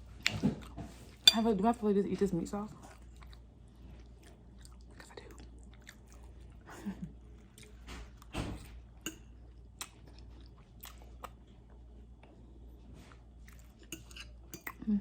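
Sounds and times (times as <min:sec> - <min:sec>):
chewing with wet mouth smacks: 0:02.7 - 0:12.4, 0:13.0 - 0:14.9.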